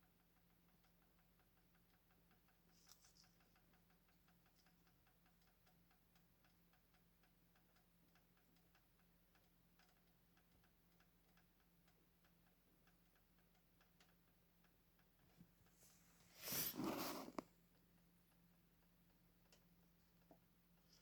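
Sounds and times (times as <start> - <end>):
rat breathing rapidly: 16.2 - 17.4.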